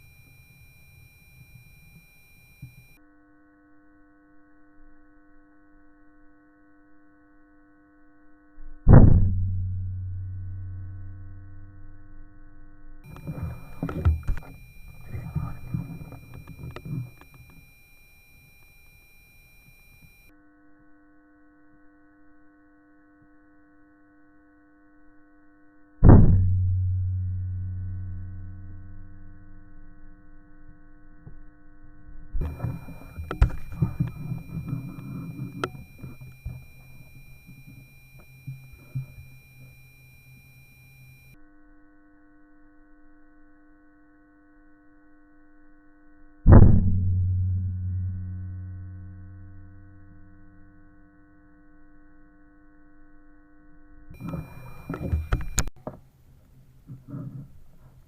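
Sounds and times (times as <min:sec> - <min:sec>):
electronic drone tone: 0:00.0 - 0:56.0, 0:56.9 - 0:57.9
faint steady hum: 0:00.0 - 0:58.0
deep ringing boom: 0:08.8 - 0:16.7, 0:26.0 - 0:36.1, 0:46.5 - 0:50.6.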